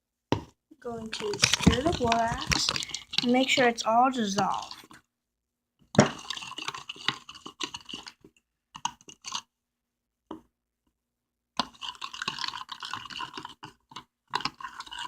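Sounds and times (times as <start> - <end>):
spoon stirring in a cup: 0.9 - 5.0, 6.0 - 9.5, 11.6 - 15.0.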